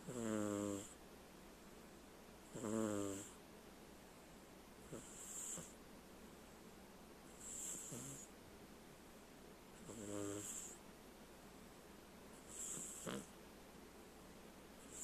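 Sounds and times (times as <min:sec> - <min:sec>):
pet snoring loudly: 0:00.0 - 0:01.0, 0:02.5 - 0:03.4, 0:04.9 - 0:05.8, 0:07.4 - 0:08.3, 0:09.8 - 0:10.8, 0:12.4 - 0:13.3.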